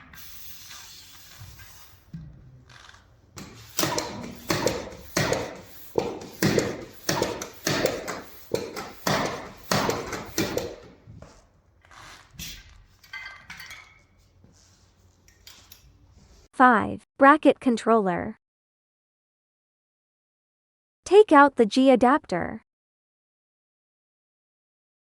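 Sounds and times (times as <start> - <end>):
hand pump strokes: 0.0 - 16.5.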